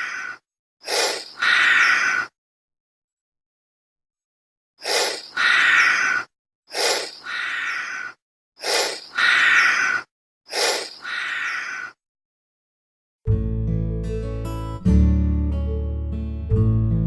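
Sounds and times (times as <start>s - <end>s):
chameleon breathing: 0.0s - 2.3s, 4.8s - 12.0s.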